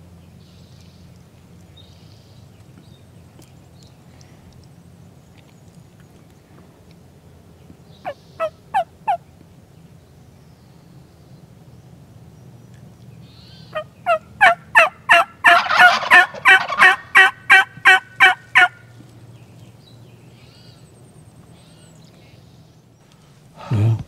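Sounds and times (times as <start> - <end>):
turkey gobbling: 8.4 - 9.2, 13.7 - 18.8.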